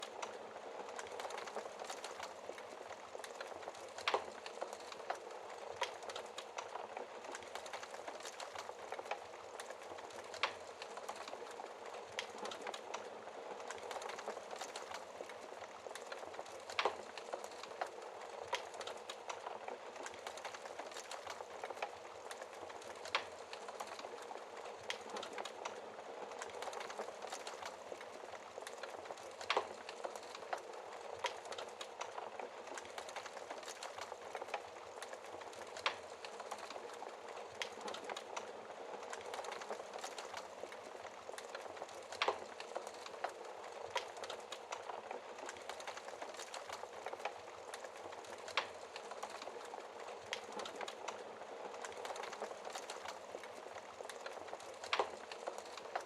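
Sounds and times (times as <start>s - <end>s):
fire crackling hiss: 0.0s - 56.0s
fire pops: 0.1s - 56.0s.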